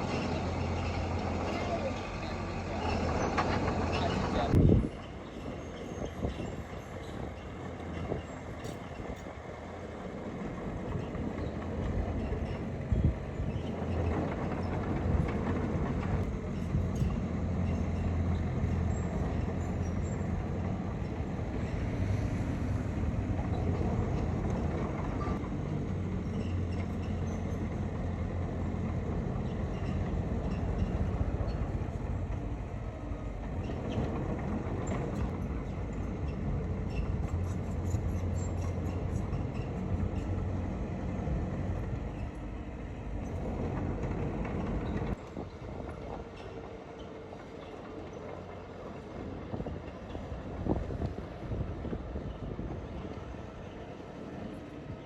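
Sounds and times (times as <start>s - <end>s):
bulldozer diesel engine running: 0.0s - 55.0s
crawler tracks clanking: 0.0s - 55.0s.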